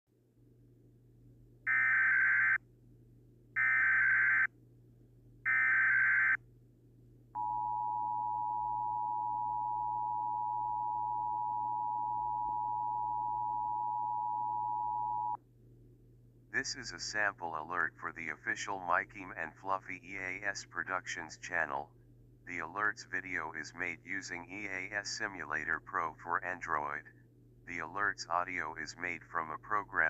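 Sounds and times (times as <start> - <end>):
steady two-tone attention signal: 7.4 - 15.4.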